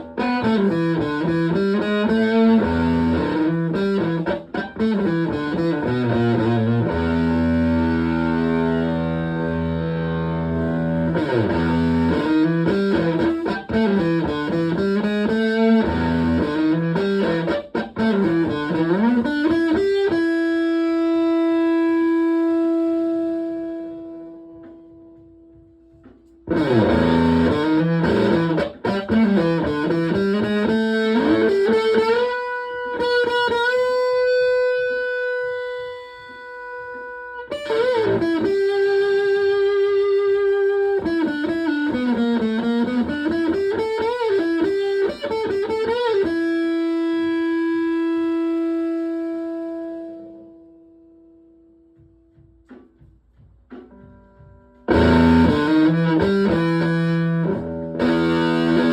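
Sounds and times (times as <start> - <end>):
fuzz electric guitar lead: 0.0 - 51.0, 53.9 - 58.9.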